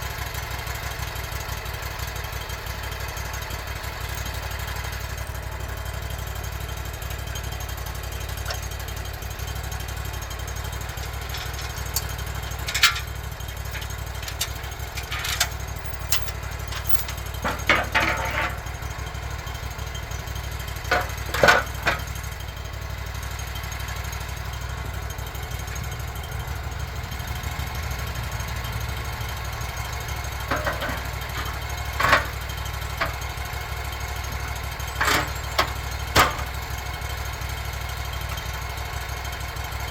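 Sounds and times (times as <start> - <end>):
sawmill engine idling: 0.0 - 39.9
sharp knocks and scrapes: 14.2 - 18.6.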